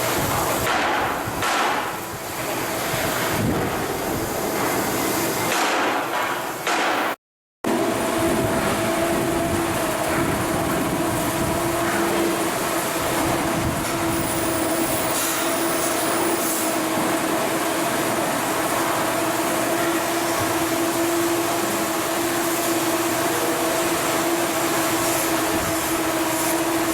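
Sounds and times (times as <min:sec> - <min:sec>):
machinery humming: 0:07.7 - 0:26.9.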